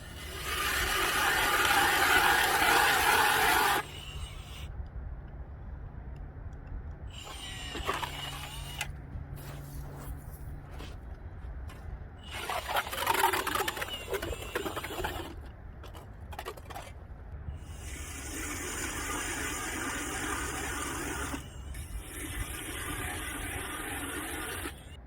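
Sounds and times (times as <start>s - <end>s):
scraping slushy churning: 0.0s - 3.9s, 12.2s - 17.0s, 17.7s - 25.0s
ice auger motor: 0.0s - 4.6s, 7.2s - 8.9s, 12.2s - 16.8s, 17.7s - 24.9s.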